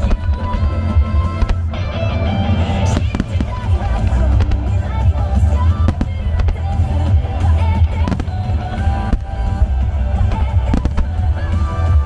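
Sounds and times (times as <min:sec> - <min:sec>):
song with heavy bass over loudspeakers: 0:00.0 - 0:12.0
firework bangs: 0:02.7 - 0:12.0.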